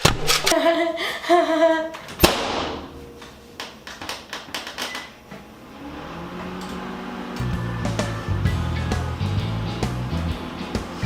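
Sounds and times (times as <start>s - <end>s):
loud ringing bang: 2.2s - 3.8s.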